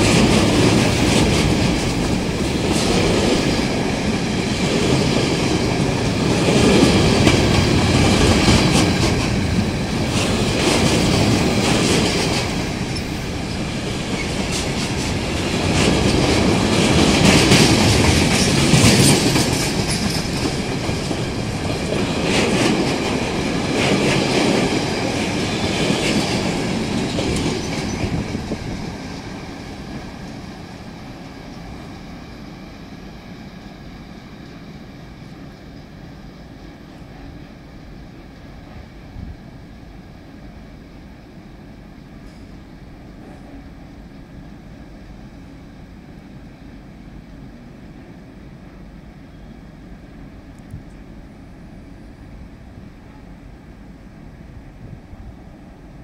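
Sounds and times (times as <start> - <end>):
freight train wheels rumbling: 0.0 - 56.0.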